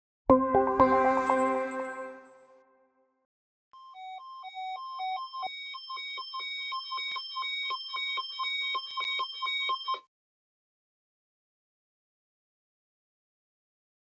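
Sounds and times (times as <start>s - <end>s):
pulsing alarm tone: 3.8s - 10.1s.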